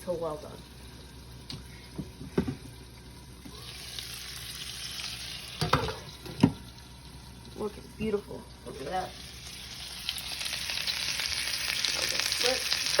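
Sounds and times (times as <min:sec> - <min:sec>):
steak sizzling in a pan: 0:03.5 - 0:13.0.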